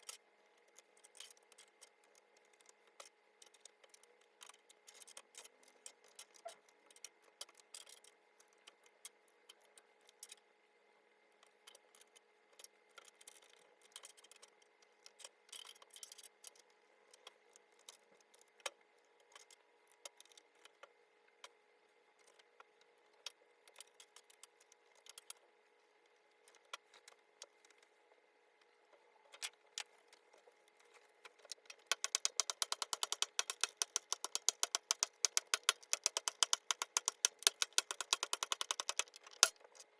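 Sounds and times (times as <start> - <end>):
plastic keyboard clicks and clatters: 31.3 - 39.9
fast keyboard typing: 31.7 - 39.6.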